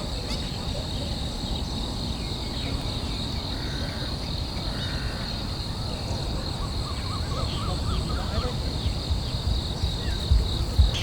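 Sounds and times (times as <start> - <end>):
insect chorus: 0.0 - 11.0
faint chirps: 7.0 - 11.0
low rumbling noise: 8.4 - 11.0.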